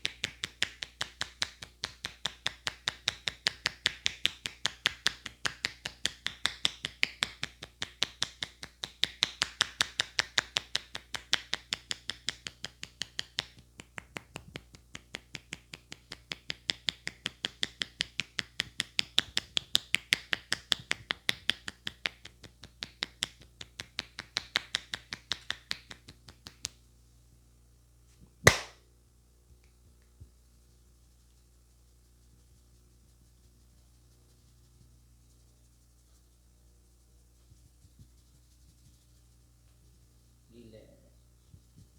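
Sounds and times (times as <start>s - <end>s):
hands striking head in massage: 28.5s - 28.8s
loud sharp crack: 28.5s - 28.8s.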